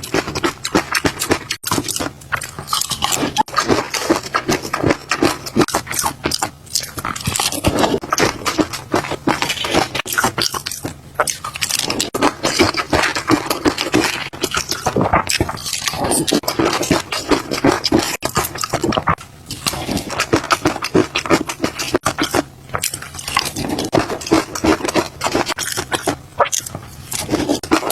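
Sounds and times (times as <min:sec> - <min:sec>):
wet crackling chewing: 0:00.0 - 0:27.9.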